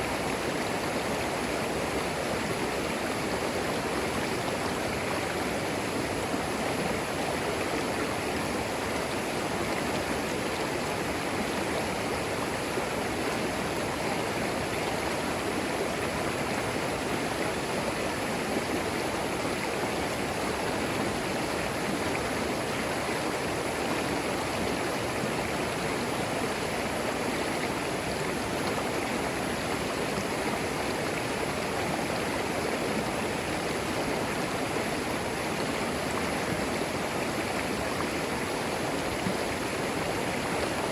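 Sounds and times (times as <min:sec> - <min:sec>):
creek flowing over stones: 0:00.0 - 0:40.9.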